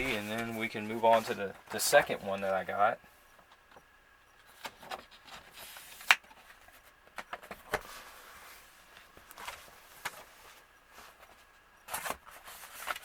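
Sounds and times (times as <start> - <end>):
record handling taps and clicks: 3.4 - 7.9.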